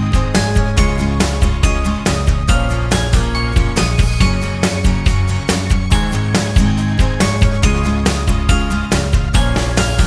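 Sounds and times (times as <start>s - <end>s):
background music with drum beat: 0.0s - 10.0s.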